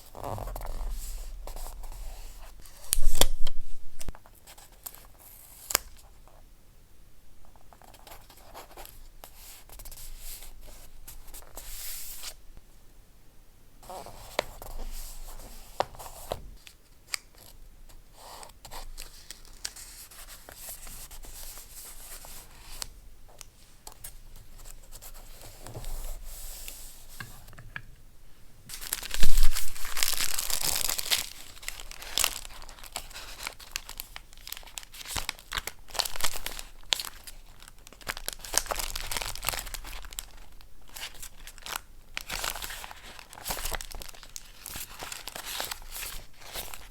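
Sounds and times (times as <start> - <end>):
paper rustling and tearing: 2.6 - 4.1, 28.7 - 37.3.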